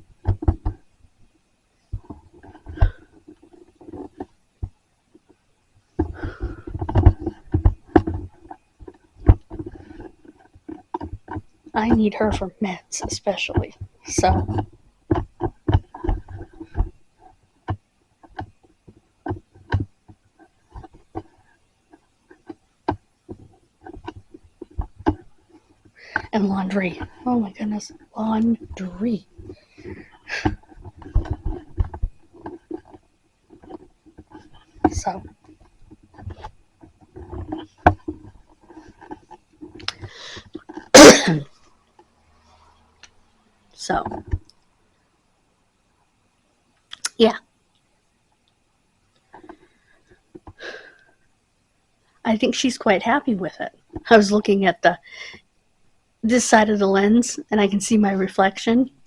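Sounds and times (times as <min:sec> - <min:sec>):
person sneezing loudly: 0:41.0 - 0:41.5.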